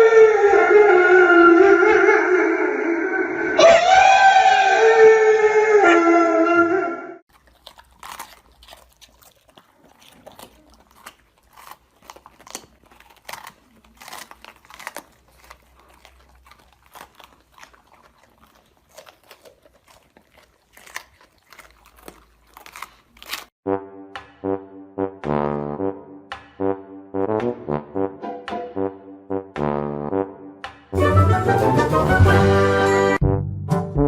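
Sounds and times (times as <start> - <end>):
pet chewing something crunchy: 7.3 - 23.6.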